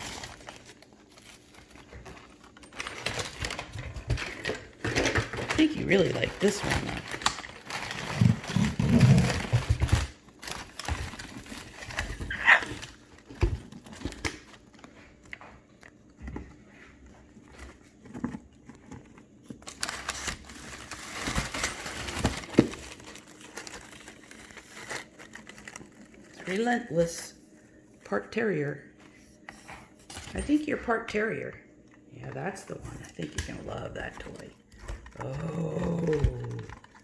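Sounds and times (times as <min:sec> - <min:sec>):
bird tearing and crinkling paper: 0:00.0 - 0:15.2, 0:17.3 - 0:27.0, 0:34.1 - 0:37.0.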